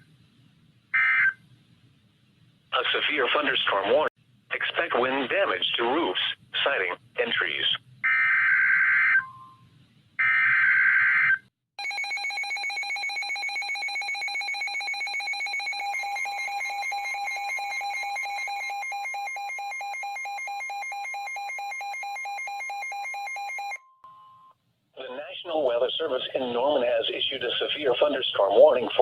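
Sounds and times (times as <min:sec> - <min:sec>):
steady warning alarm tone: 0:10.2 - 0:24.5.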